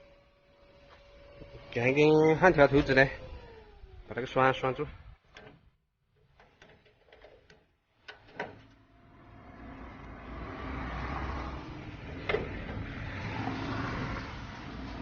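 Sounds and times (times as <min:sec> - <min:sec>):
engine-like rumbling: 0:08.1 - 0:15.0.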